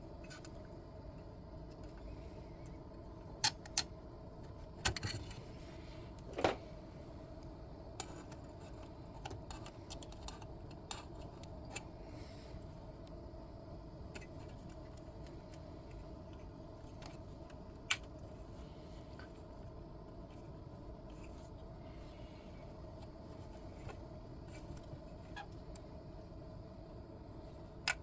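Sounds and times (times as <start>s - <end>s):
steady low hum: 0.0s - 28.0s
small parts clicking and tapping: 3.4s - 3.9s, 4.8s - 5.4s, 8.0s - 11.9s, 14.1s - 18.3s, 27.8s - 28.0s.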